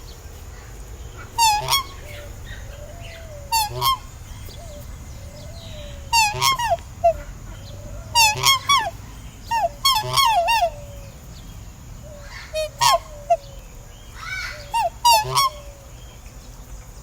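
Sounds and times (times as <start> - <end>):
swans honking: 0.9 - 16.2.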